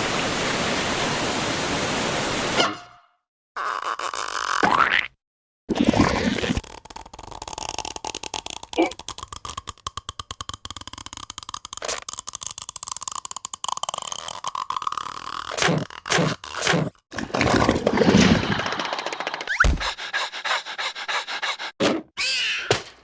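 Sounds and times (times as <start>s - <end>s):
cartoon clicks and scraping: 5.8s - 17.0s, 18.7s - 23.0s.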